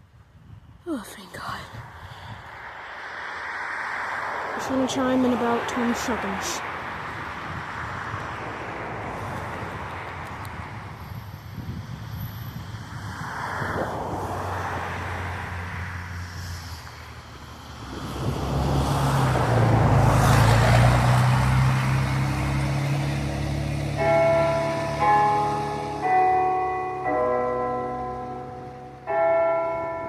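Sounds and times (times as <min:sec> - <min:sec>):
car passing: 0:01.3 - 0:30.0
church bells chiming: 0:23.8 - 0:30.0.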